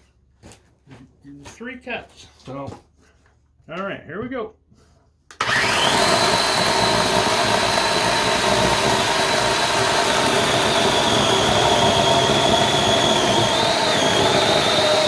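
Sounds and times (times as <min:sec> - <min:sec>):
chainsaw cutting log: 0:05.3 - 0:15.0.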